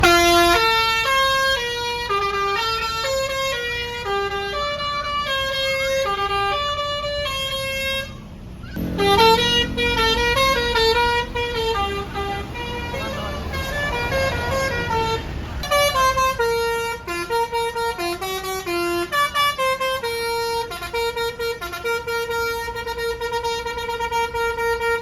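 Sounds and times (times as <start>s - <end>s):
bus horn playing a tune: 0.0s - 25.0s.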